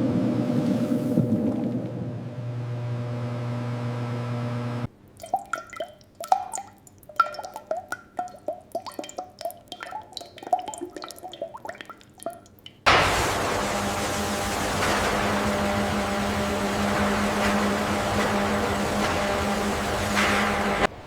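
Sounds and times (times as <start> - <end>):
machine hum: 0.0 - 4.9, 12.9 - 21.0
liquid dripping: 4.9 - 20.9.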